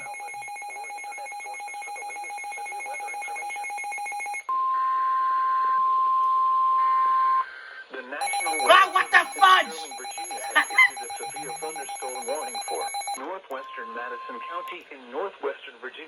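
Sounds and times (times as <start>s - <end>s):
rapidly pulsing alarm tone: 0.0s - 4.5s, 8.2s - 13.2s
steady warning alarm tone: 0.0s - 4.5s, 8.2s - 14.7s.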